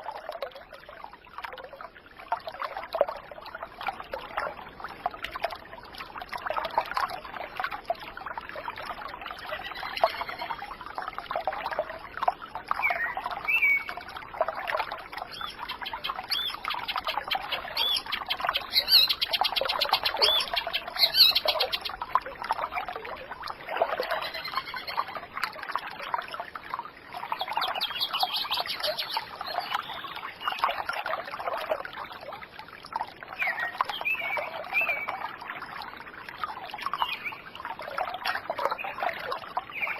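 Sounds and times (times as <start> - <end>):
water trickling and babbling: 0.0 - 39.9
birds chirping and calling: 9.5 - 10.6, 15.3 - 22.0, 24.0 - 25.1, 27.3 - 30.6.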